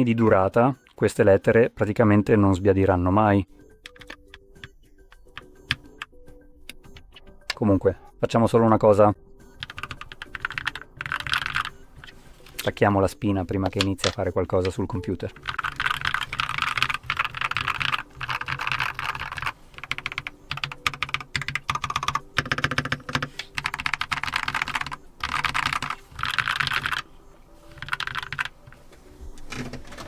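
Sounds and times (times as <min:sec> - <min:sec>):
mechanical keyboard typing: 0:03.9 - 0:04.4, 0:09.6 - 0:11.8, 0:13.6 - 0:27.1, 0:27.7 - 0:28.8.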